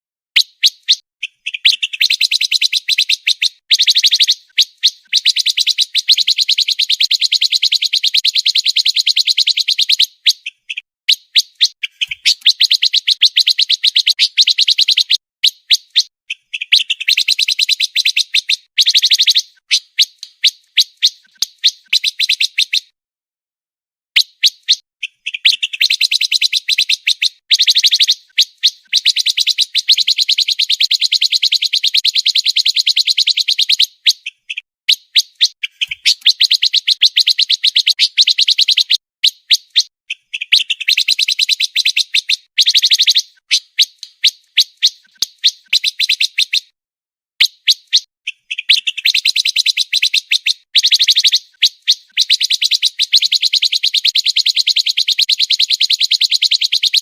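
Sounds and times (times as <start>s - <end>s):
bird chirps: 0.3s - 23.0s, 24.2s - 46.8s, 47.4s - 57.0s
bird singing rapid trills: 0.4s - 22.9s, 24.2s - 46.7s, 47.5s - 53.8s.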